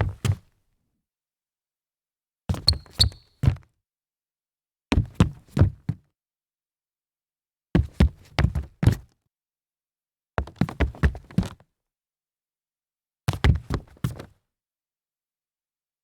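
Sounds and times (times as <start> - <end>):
rubber sole squeak: 2.6 - 3.4.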